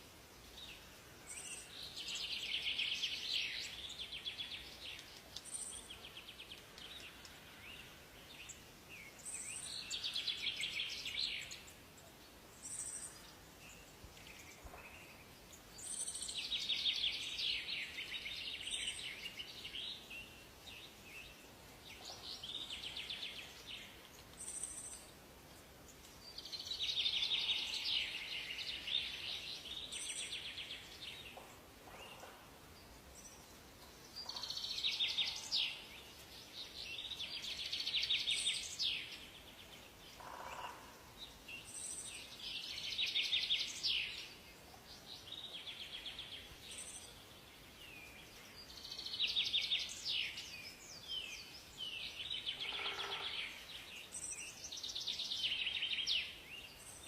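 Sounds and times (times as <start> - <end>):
faint background hiss: 0.0 - 57.0
songbirds singing: 0.0 - 57.0.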